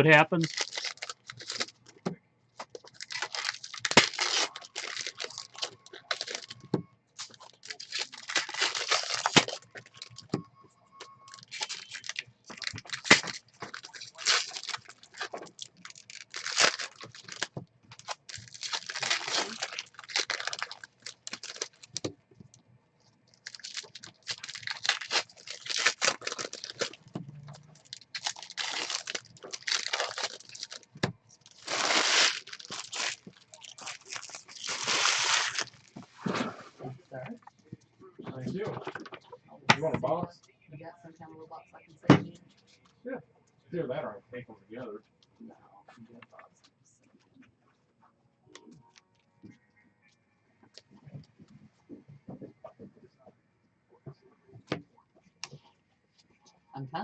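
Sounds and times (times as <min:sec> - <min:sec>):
wrappers crinkling and tearing: 0:00.3 - 0:01.8, 0:02.6 - 0:10.3, 0:11.1 - 0:22.1, 0:23.3 - 0:36.5.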